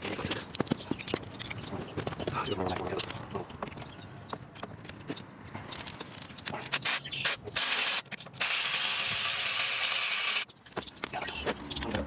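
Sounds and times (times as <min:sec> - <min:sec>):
ratchet wrench clicking: 0:06.8 - 0:10.5.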